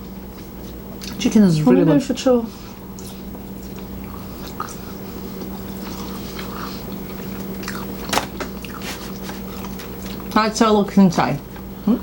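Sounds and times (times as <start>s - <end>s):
sharp click: 8.1s - 8.4s.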